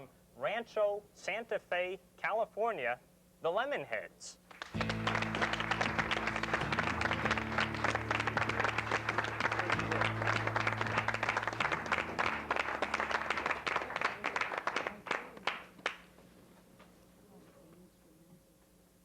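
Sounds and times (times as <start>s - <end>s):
audience applauding: 4.5s - 16.1s
low held music chords: 4.8s - 13.8s.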